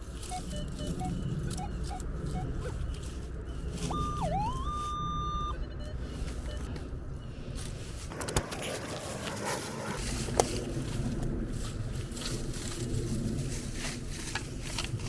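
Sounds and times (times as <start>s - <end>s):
metal detector beep: 0.0s - 8.0s.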